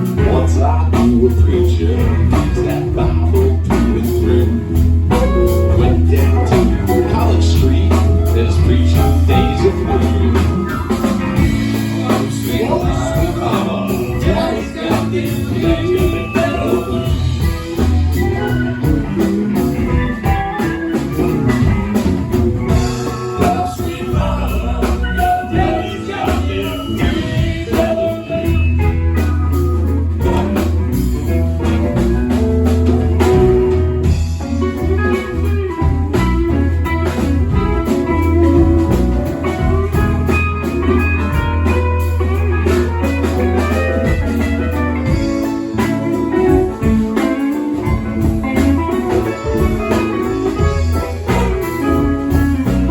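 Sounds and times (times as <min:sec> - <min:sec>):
person singing: 0:00.0 - 0:29.3
live blues-rock band: 0:00.0 - 0:52.9.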